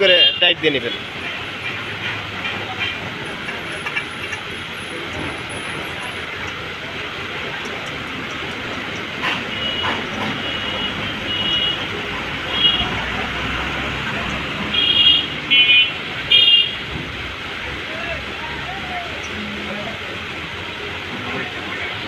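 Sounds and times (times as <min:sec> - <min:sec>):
street traffic noise: 0:00.0 - 0:22.0.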